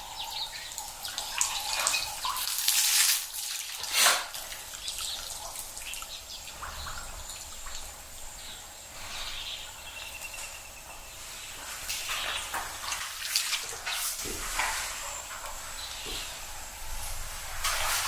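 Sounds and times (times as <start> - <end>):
water splashing and dripping: 0.0 - 8.2, 11.5 - 18.0
bird chirps: 4.8 - 12.5.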